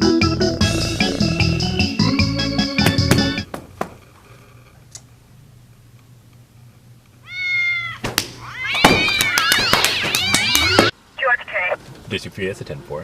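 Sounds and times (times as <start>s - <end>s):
cats meowing and yowling: 7.2s - 10.9s.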